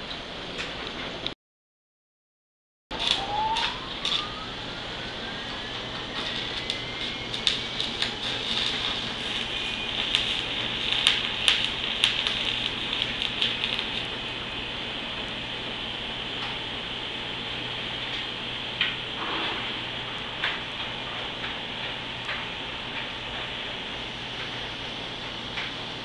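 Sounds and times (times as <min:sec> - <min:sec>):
machine hiss and hum: 0:02.9 - 0:26.0
electric motor whine: 0:03.0 - 0:14.8.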